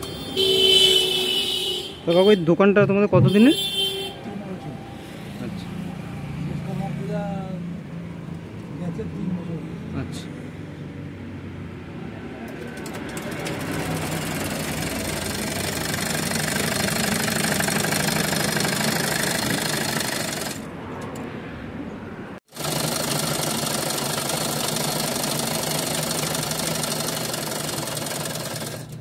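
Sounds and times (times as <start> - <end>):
industrial sewing machine running: 12.6 - 20.7, 22.5 - 29.0.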